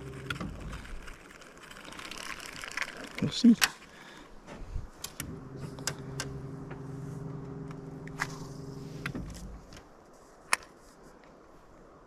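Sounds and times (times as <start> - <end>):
electric trolling motor humming: 0.0 - 2.9, 5.1 - 9.8.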